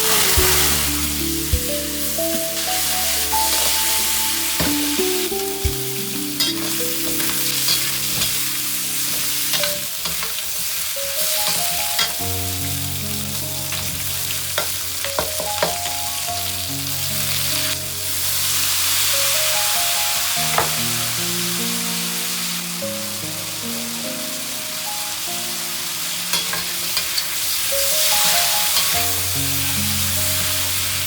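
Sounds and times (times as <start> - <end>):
food sizzling in a hot pan: 0.0 - 31.0
soft background music: 0.0 - 31.0.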